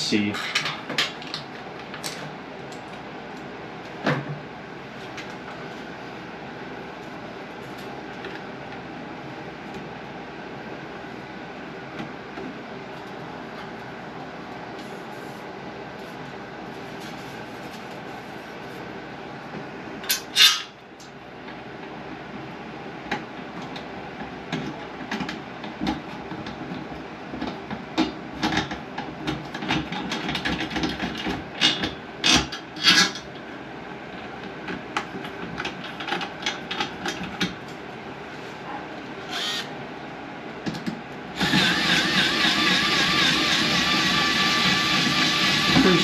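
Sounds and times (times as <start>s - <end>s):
steady hum: 0.0s - 24.8s, 36.5s - 46.0s.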